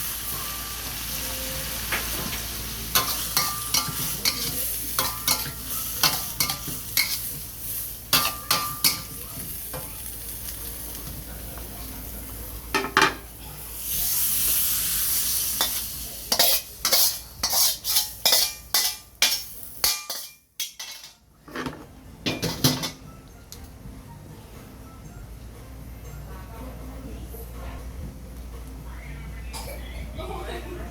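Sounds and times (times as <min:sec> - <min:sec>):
food frying in a pan: 0:00.0 - 0:21.2
metal utensil scraping a pan: 0:02.9 - 0:07.3, 0:15.4 - 0:21.7.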